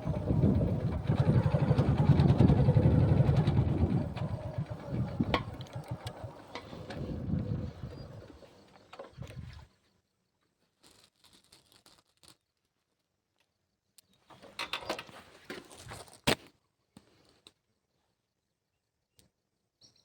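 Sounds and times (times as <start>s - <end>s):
engine running: 0.0s - 9.6s.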